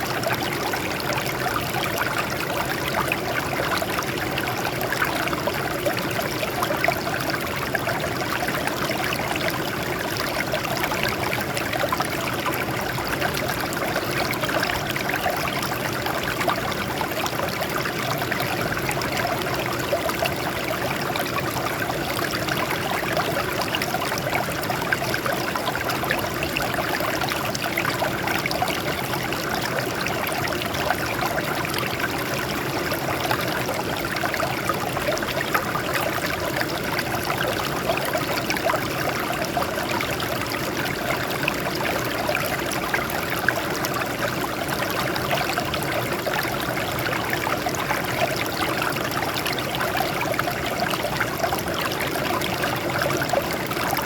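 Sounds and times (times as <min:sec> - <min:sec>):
water flowing over rocks: 0:00.0 - 0:54.0.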